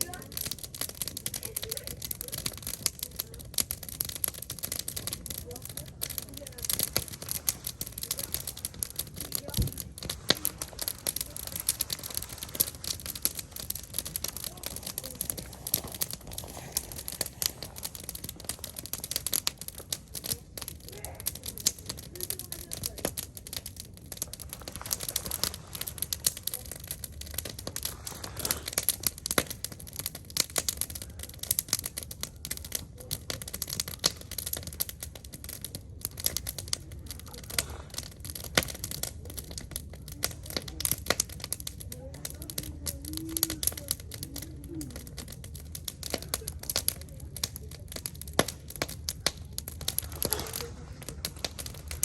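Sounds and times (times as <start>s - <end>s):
wood fire crackling and popping: 0.0s - 52.0s.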